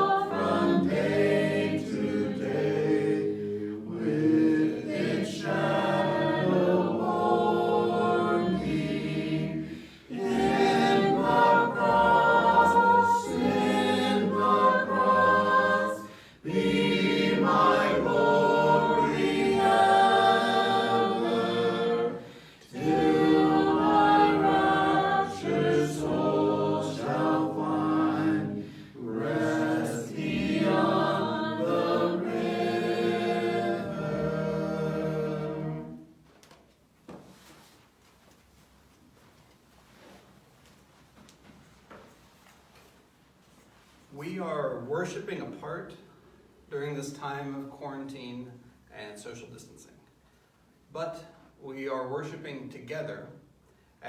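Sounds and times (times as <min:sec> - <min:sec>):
congregation singing a hymn: 0:00.0 - 0:36.2.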